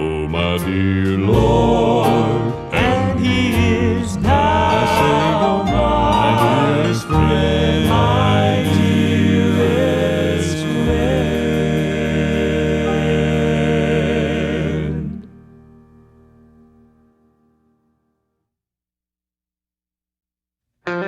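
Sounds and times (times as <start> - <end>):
male quartet singing in harmony: 0.0 - 15.4.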